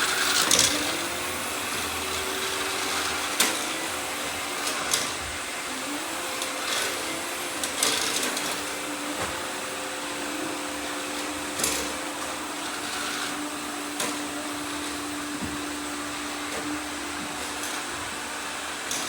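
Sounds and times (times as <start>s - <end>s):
robot vacuum cleaners whirring: 0.0s - 19.0s.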